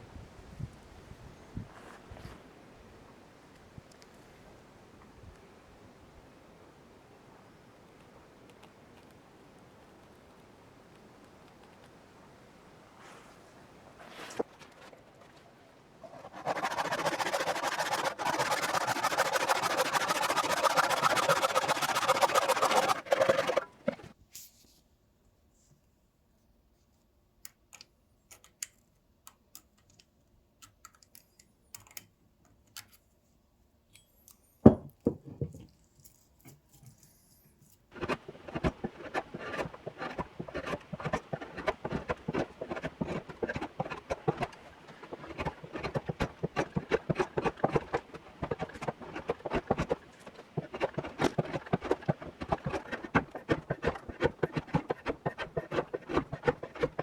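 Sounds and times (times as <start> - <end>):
abrasive tool scrubbing metal: 16.0 - 24.1, 38.0 - 57.0.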